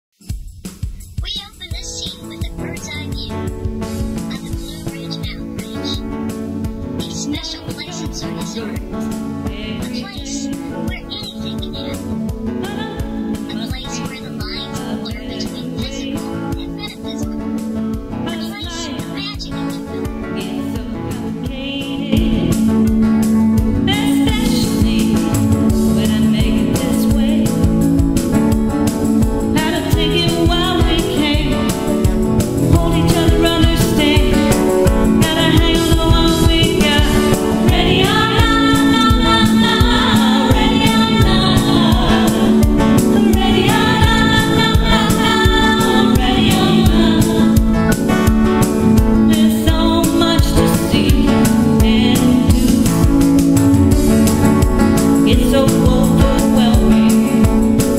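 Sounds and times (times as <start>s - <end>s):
instrumental accompaniment: 0.2s - 57.9s
voices singing: 1.2s - 3.5s, 4.2s - 6.2s, 6.9s - 17.4s, 18.2s - 27.9s, 29.6s - 48.0s, 55.2s - 57.9s.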